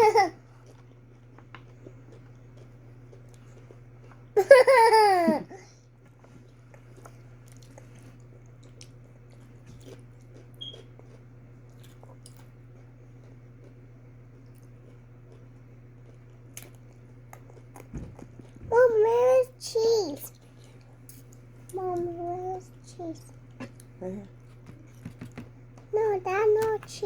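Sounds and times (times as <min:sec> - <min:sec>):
chewing and mouth clicks: 0:00.4 - 0:04.4, 0:06.0 - 0:18.6.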